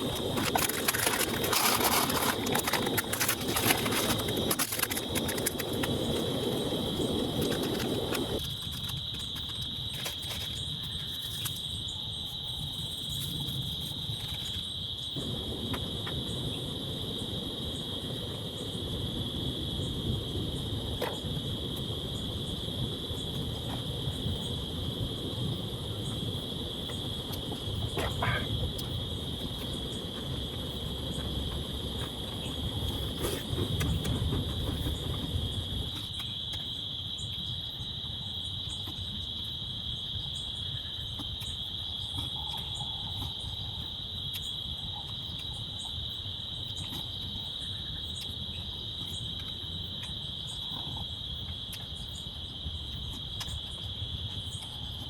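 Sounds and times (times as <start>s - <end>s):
low rumbling noise: 0.0s - 8.5s, 15.1s - 36.1s
crickets chirring: 0.0s - 55.0s.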